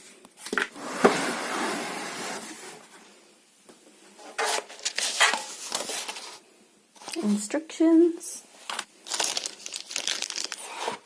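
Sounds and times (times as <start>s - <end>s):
packaging scraping rustle: 4.3s - 6.4s, 8.6s - 11.0s.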